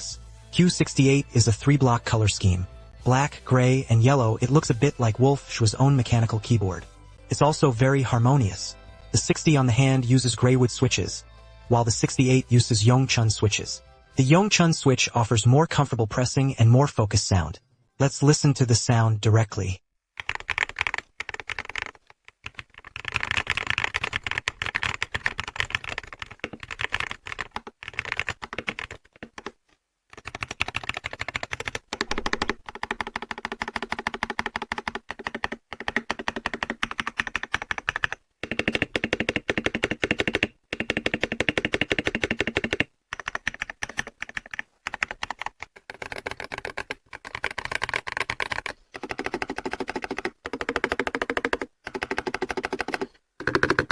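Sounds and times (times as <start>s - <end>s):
keyboard keystroke clacks: 30.2s - 53.9s.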